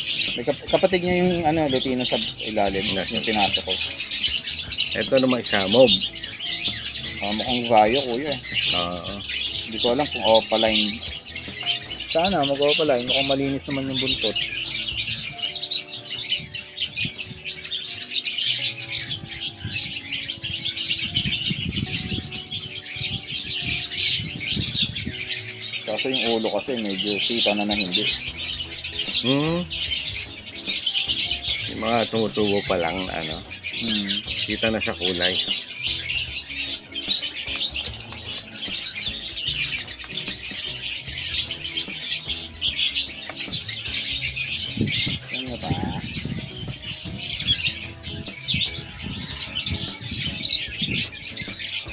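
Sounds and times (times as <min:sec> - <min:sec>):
parrots chirping and chattering: 0:00.0 - 0:51.9.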